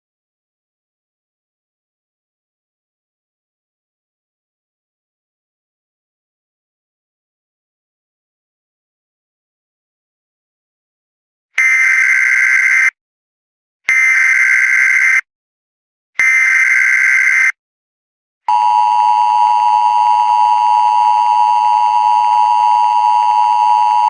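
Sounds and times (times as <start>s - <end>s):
two-tone attention signal: 18.5s - 24.0s.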